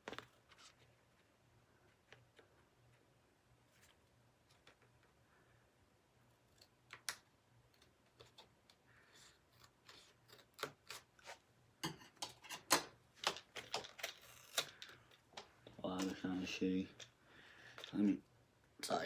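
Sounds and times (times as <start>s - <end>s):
package clicks and crackles: 12.7s - 16.2s.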